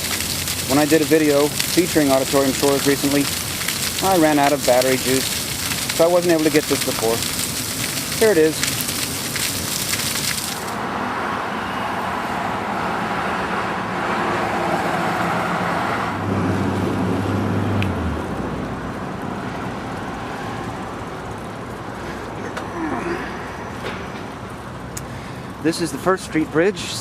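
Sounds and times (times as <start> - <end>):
fountain water splashing: 0.0 - 10.8
road traffic: 0.0 - 27.0
vehicle passing with engine hum: 9.3 - 26.7.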